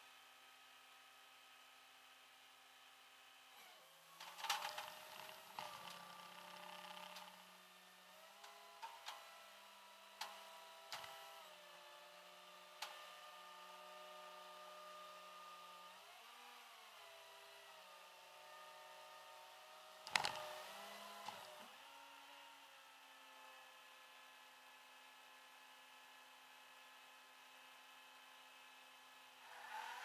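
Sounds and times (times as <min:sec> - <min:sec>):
engine hum inside vehicle: 0:02.7 - 0:24.7.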